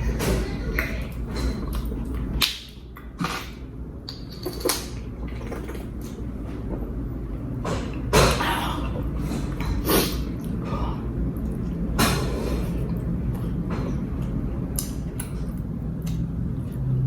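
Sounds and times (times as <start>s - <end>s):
steady low hum: 0.0s - 17.0s
person eating: 7.9s - 17.0s.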